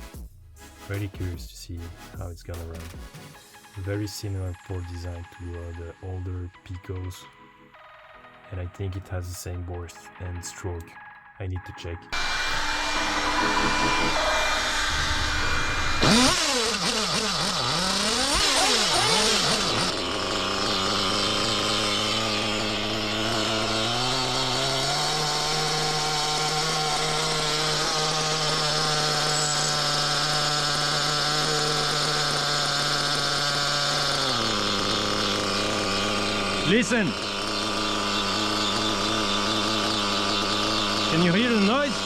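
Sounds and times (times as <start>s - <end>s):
nitro engine revving: 12.1s - 42.0s.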